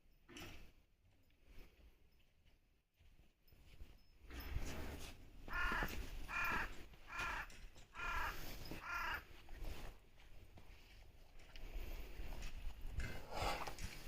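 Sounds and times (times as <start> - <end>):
crow cawing: 5.5 - 9.3.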